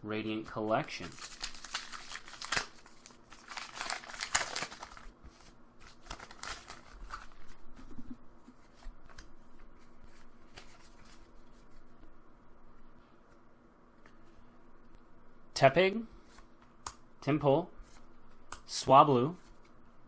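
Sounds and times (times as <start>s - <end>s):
foil wrapper crinkling and tearing: 0.9s - 5.1s, 5.8s - 7.6s
cards clicking and rustling: 1.1s - 5.0s.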